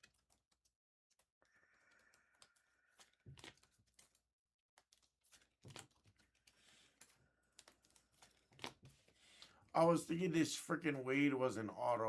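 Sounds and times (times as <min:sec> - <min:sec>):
trading cards rustling and tapping: 0:02.5 - 0:09.6.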